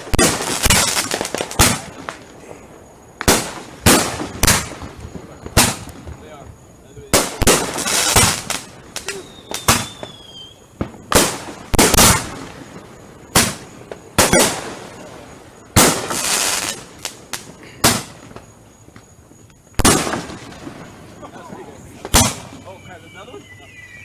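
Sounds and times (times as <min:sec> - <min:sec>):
fireworks bangs: 0:00.0 - 0:24.0
fireworks crackling: 0:00.0 - 0:24.0
falling firework whistle: 0:07.8 - 0:12.5, 0:22.0 - 0:24.0.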